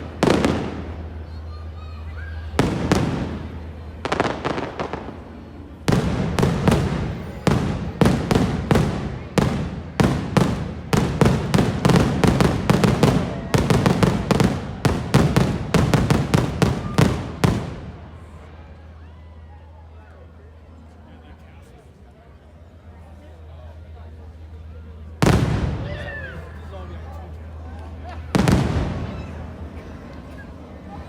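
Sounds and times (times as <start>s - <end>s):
fireworks bursting: 0.0s - 18.5s, 25.2s - 26.2s, 28.2s - 29.7s.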